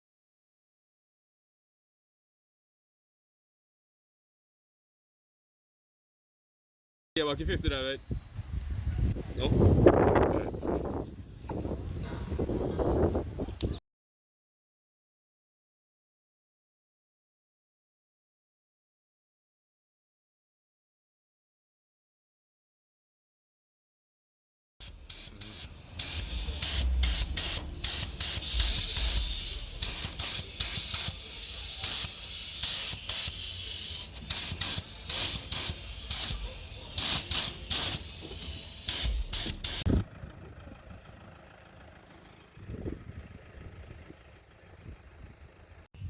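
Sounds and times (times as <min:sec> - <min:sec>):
pressurised spray hissing: 0:24.8 - 0:39.9.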